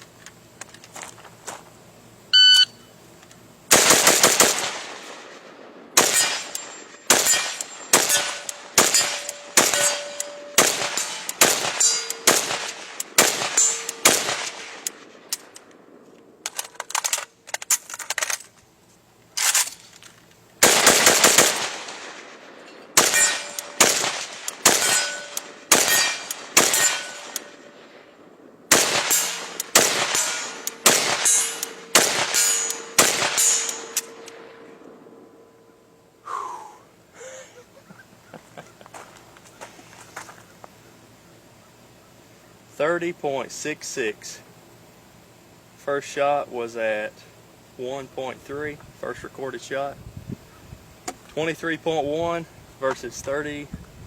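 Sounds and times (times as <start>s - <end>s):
shot timer beep: 2.3s - 2.9s
rifle gunshots: 3.7s - 16.0s, 20.6s - 28.0s, 28.7s - 35.0s.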